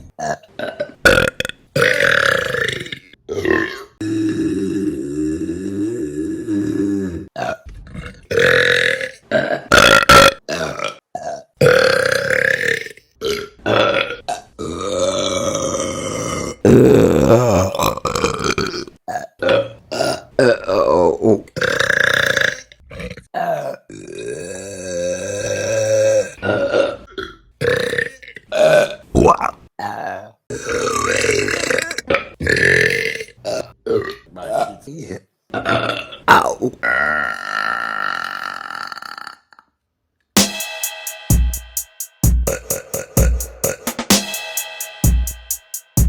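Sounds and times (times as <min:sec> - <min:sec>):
electronic music with drum-machine beat: 0:40.4 - 0:46.0.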